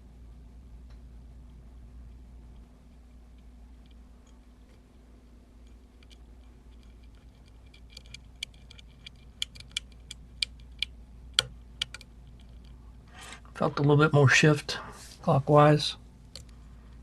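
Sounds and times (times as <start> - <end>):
lock pick clicking: 6.0 - 12.6.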